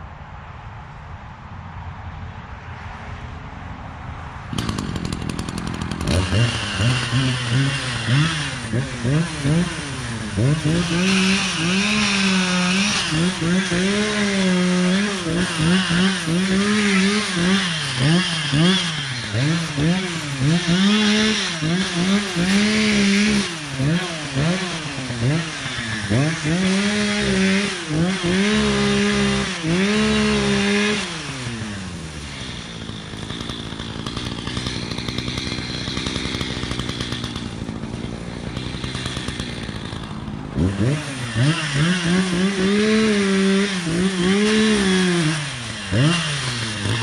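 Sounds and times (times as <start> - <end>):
chainsaw cutting wood: 4.5 - 47.0.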